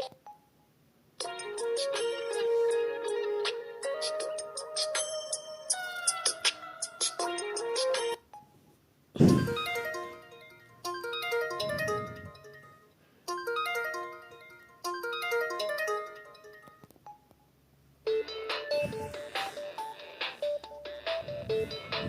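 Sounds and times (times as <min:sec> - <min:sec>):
polyphonic phone ringtone: 0:18.1 - 0:22.0.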